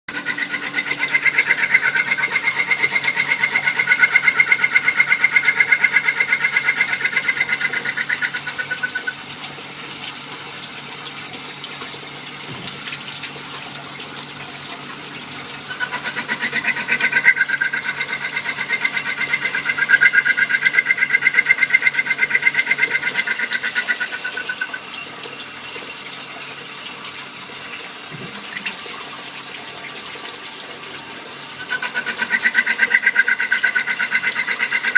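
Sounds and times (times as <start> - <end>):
high rapidly pulsing tone: 0.1 - 9.1, 15.7 - 24.8, 31.6 - 34.9
coolant flowing: 0.1 - 34.9.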